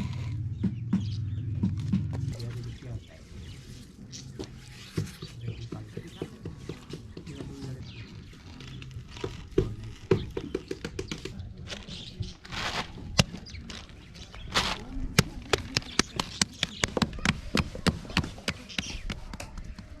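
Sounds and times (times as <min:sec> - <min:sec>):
sharp knocks and taps: 0:04.4 - 0:07.8, 0:09.1 - 0:11.7, 0:15.2 - 0:20.0.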